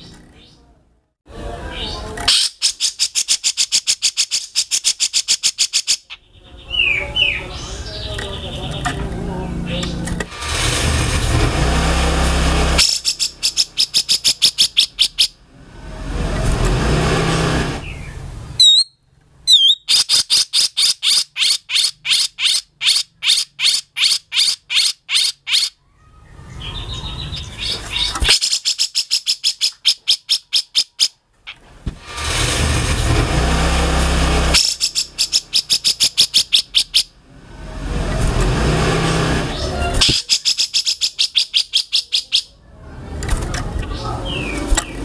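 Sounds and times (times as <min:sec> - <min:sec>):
bird harsh calls and rattles: 0:00.0 - 0:00.6, 0:01.7 - 0:15.4, 0:16.3 - 0:37.2, 0:38.1 - 0:42.5, 0:43.3 - 0:45.0
swooping whistles: 0:18.6 - 0:20.1.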